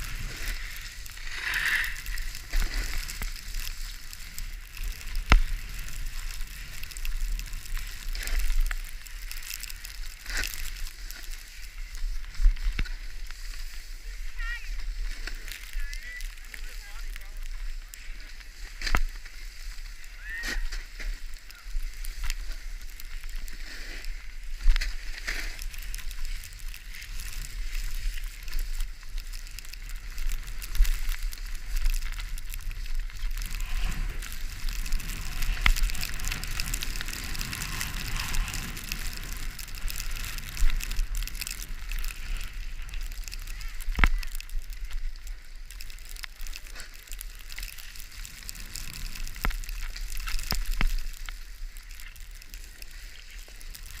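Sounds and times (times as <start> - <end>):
skis scraping over snow: 0.0 - 54.0
wind rumble on microphone: 24.2 - 54.0.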